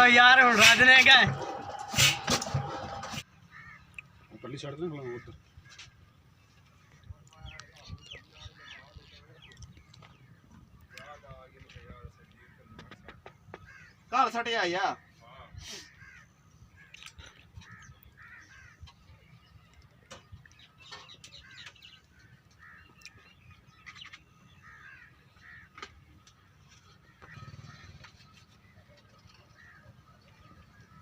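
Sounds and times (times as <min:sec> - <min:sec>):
crows cawing: 0:02.6 - 0:04.1, 0:13.5 - 0:14.2, 0:15.8 - 0:19.0, 0:21.3 - 0:23.4, 0:24.5 - 0:26.1, 0:26.8 - 0:28.3, 0:29.4 - 0:30.0.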